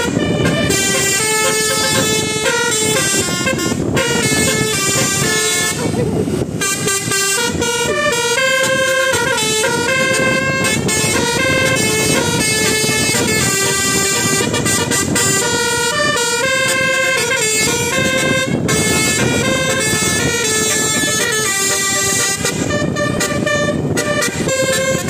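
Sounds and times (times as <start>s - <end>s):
low rumble: 0.0s - 7.0s
multi-tone bus air horn melody: 0.0s - 25.0s.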